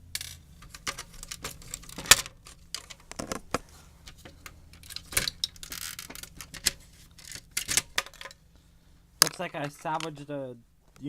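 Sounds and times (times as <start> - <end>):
plastic and metal parts clicking: 0.1 - 8.4.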